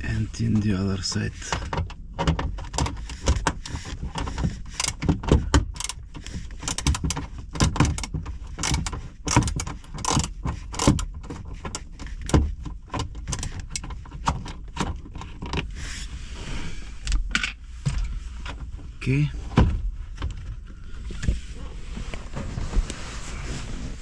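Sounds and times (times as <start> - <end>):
hand tools clicking and knocking: 1.5 - 15.6.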